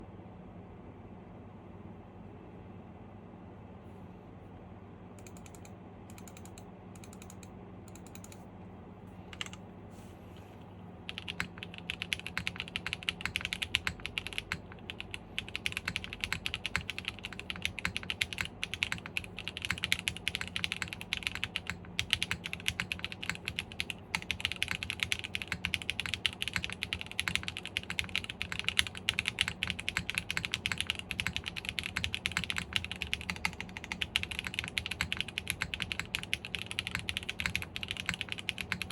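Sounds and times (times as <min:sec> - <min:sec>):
fast typing on mechanical keyboard: 0:09.3 - 0:09.6, 0:11.0 - 0:38.9.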